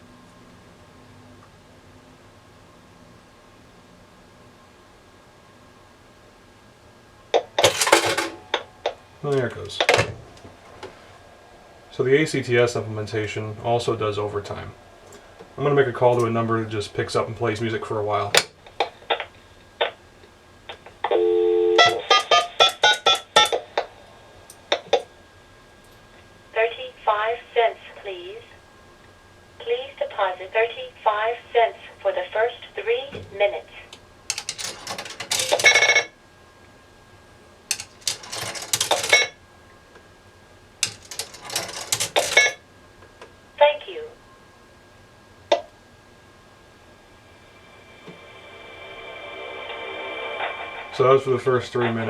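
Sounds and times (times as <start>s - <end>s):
coins rattling through payphone: 7.6s - 8.7s, 34.3s - 36.0s, 37.7s - 39.3s, 40.8s - 42.6s
phone line clicks: 20.7s - 25.1s
dial tone: 21.1s - 22.6s
touch-tone beeps: 21.1s - 23.5s.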